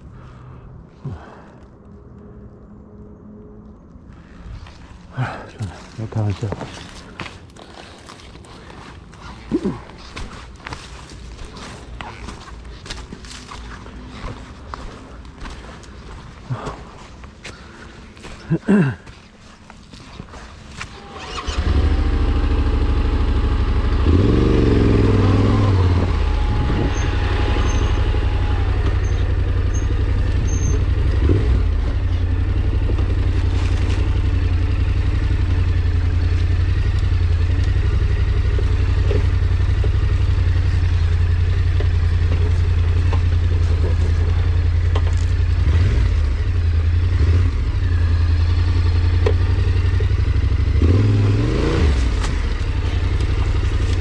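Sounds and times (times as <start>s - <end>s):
small vehicle engine revving: 20.8s - 54.0s.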